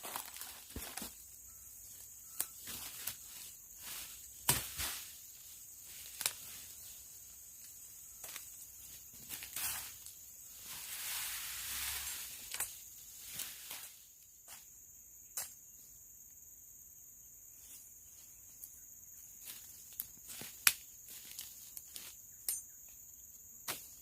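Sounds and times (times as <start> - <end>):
rustling in undergrowth: 0.0 - 14.7, 17.6 - 22.2
insects droning: 0.0 - 24.0.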